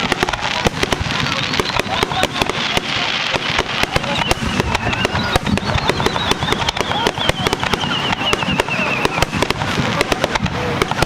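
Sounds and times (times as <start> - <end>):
fireworks bangs and crackling: 0.0 - 11.0
high wavering whistle: 4.0 - 9.4.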